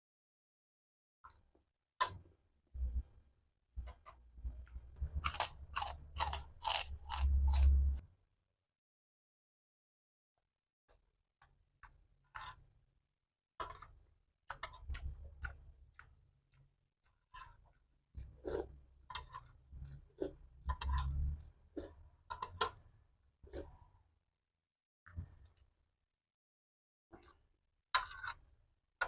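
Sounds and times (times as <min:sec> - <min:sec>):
wet mouth clicks and chewing: 0:05.1 - 0:08.0.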